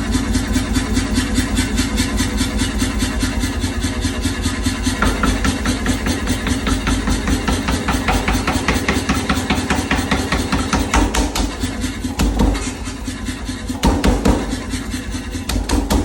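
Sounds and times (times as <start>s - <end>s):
motor hum: 0.0s - 16.0s
power hammer striking: 4.9s - 16.0s.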